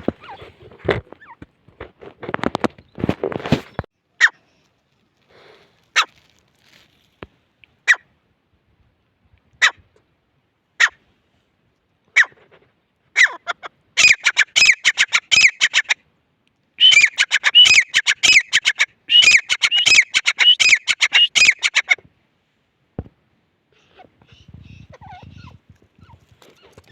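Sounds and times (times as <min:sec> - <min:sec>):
francolin calling: 0:14.0 - 0:16.0, 0:16.8 - 0:22.0.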